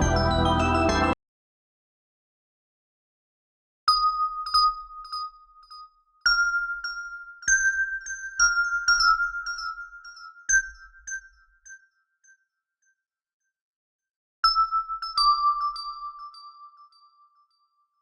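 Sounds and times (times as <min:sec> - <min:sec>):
high piano notes repeated: 0:00.0 - 0:01.2.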